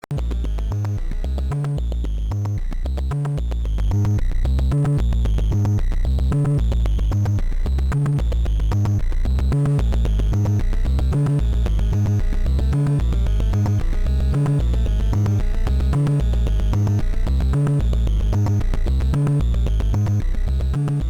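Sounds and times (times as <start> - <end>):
sequenced synth bass line: 0.0 - 21.0.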